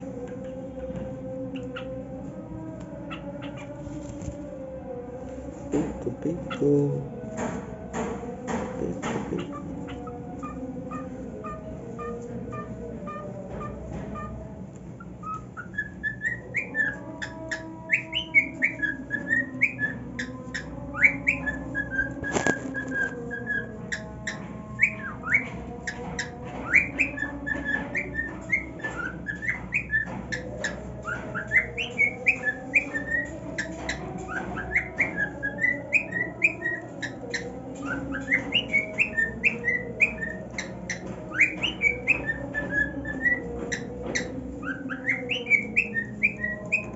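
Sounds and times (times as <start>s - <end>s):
cockatiel whistling and chirping: 15.2s - 46.9s.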